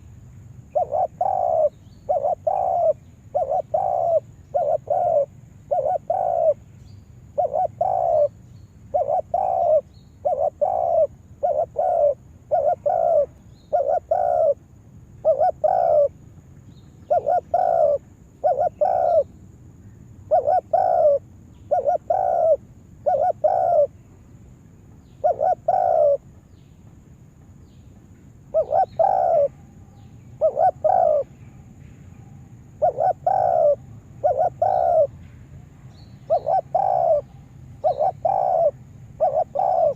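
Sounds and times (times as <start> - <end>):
dove cooing: 0.6 - 6.6, 7.3 - 8.3, 8.9 - 14.6, 15.2 - 16.2, 17.0 - 19.3, 20.2 - 24.0, 25.2 - 26.2, 28.5 - 29.6, 30.4 - 31.4, 32.7 - 35.2, 36.3 - 39.9.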